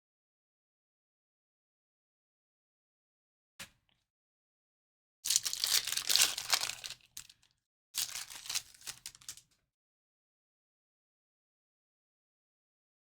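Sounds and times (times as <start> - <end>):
wrapper tearing and crinkling: 5.3 - 7.4, 8.0 - 9.4.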